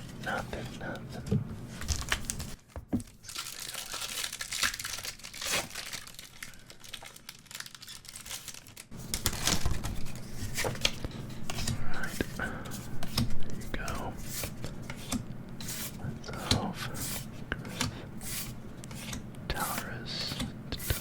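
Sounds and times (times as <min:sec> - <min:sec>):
foil wrapper crinkling and tearing: 0:01.8 - 0:10.9.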